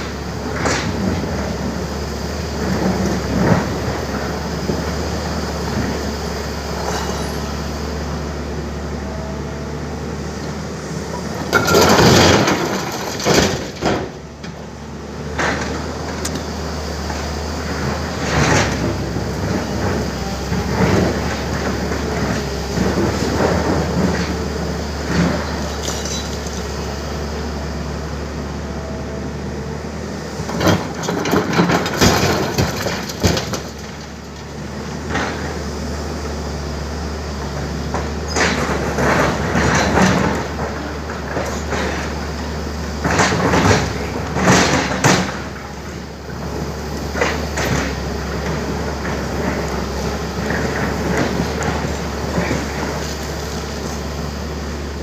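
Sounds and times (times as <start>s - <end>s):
excavator diesel engine running: 0.0s - 55.0s
boulders crashing into steel truck bed: 11.3s - 14.5s, 30.6s - 34.4s, 43.0s - 53.7s.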